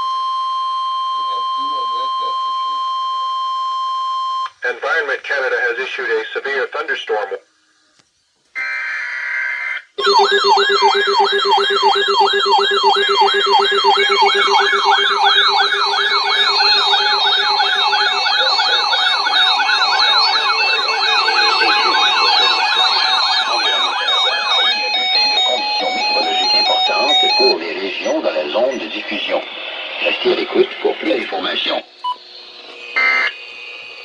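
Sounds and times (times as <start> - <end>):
sweeping electronic siren tone: 10.0 - 29.0
rapidly alternating tones: 10.0 - 32.2.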